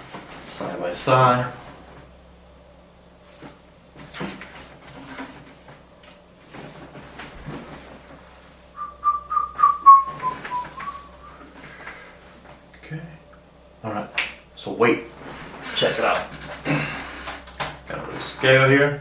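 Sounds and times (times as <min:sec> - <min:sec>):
person whistling: 0:08.8 - 0:11.5.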